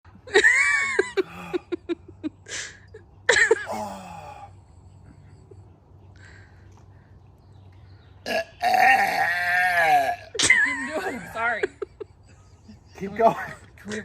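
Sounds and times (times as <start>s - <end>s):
person squealing: 8.6s - 10.4s.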